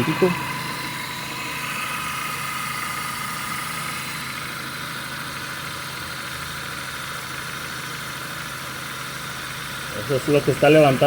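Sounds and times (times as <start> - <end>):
high whine: 0.0 - 4.5
car engine idling: 0.0 - 11.0.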